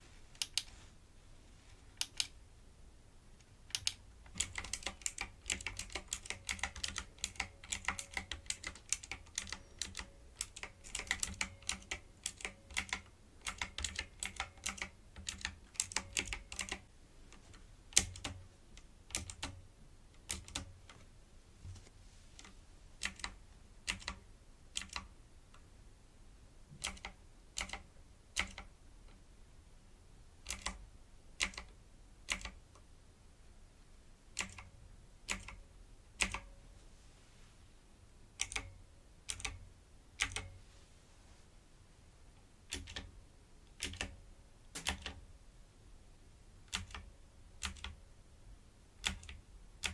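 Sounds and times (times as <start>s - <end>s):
typing on a keyboard: 3.7s - 18.4s, 19.1s - 19.6s, 20.2s - 21.0s, 22.4s - 25.1s, 26.7s - 28.7s, 30.4s - 30.8s, 31.4s - 31.7s, 32.3s - 32.7s, 34.4s - 34.7s, 35.3s - 35.6s, 36.2s - 36.5s, 38.4s - 38.7s, 39.3s - 39.6s, 40.2s - 40.5s, 42.7s - 43.1s, 43.7s - 44.2s, 44.8s - 45.2s, 46.7s - 48.0s, 49.0s - 49.9s.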